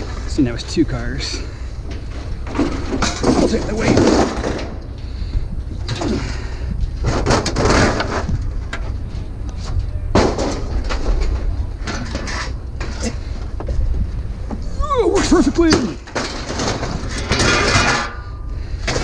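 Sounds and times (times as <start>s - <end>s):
steady low rumble: 0.0s - 19.0s
knocks and bangs: 10.1s - 12.1s.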